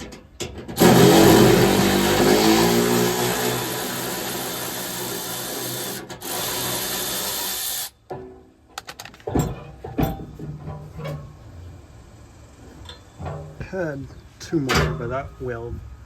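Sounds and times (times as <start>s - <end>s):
power tool running: 0.8s - 7.9s.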